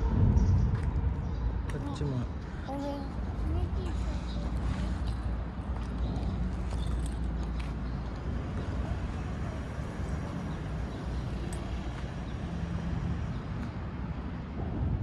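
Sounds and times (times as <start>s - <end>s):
background traffic rumble: 0.0s - 15.0s.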